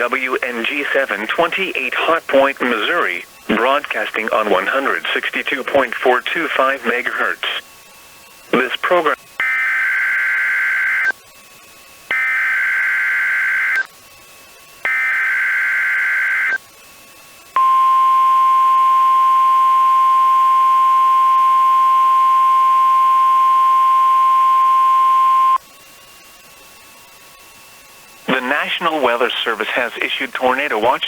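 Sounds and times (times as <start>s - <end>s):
harsh buzzing data bursts: 0.0s - 16.7s
steady warning alarm tone: 8.2s - 11.2s, 12.1s - 13.9s, 14.8s - 16.6s, 17.6s - 25.6s.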